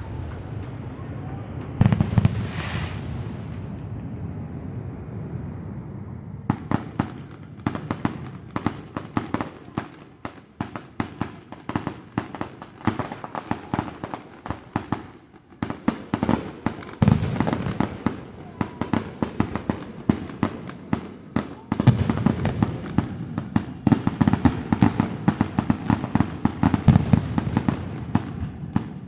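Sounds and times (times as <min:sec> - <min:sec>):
fireworks cracks and bangs: 0:00.0 - 0:04.2, 0:06.4 - 0:29.0
low rumble: 0:02.4 - 0:07.6.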